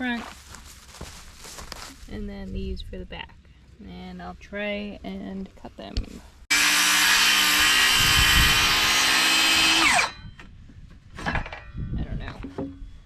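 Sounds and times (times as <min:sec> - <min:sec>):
electric saw cutting wood: 0:06.5 - 0:10.2.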